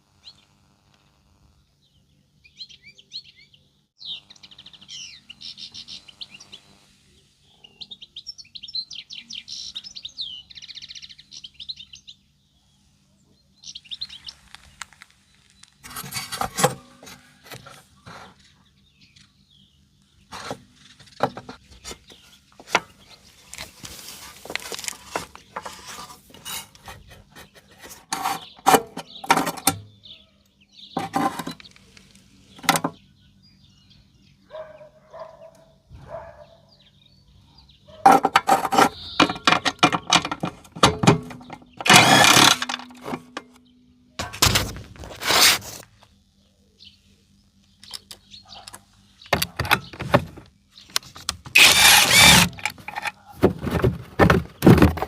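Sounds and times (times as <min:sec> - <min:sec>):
metal parts and tools clattering: 0:15.8 - 0:17.7, 0:24.6 - 0:29.8, 0:31.0 - 0:31.6, 0:38.0 - 0:43.6, 0:51.5 - 0:53.9.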